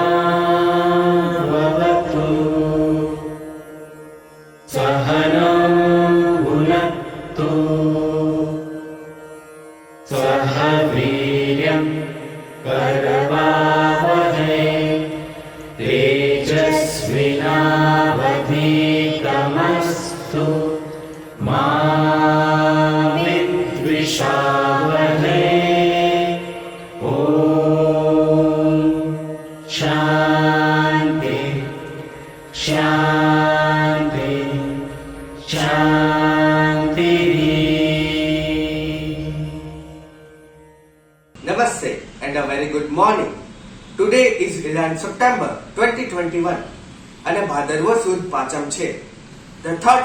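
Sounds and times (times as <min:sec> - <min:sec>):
steady low drone: 0:00.0 - 0:09.1, 0:10.1 - 0:41.4
voices chanting: 0:10.1 - 0:40.2.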